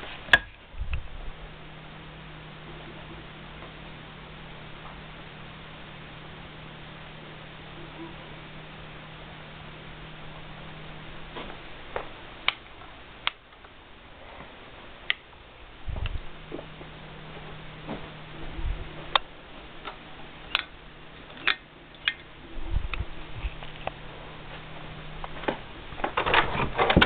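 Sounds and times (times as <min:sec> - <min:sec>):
ceiling fan humming: 0:00.0 - 0:27.0
dull low thumps: 0:15.8 - 0:16.9.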